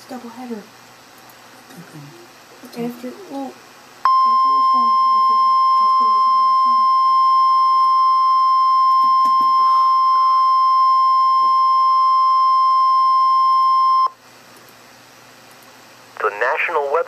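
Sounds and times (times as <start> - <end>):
high-pitched warning alarm tone: 4.1 - 14.1.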